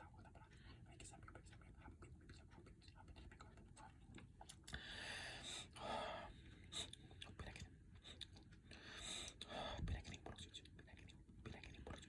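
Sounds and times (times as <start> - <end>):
faint breathy sounds: 4.7 - 7.1, 8.0 - 10.2.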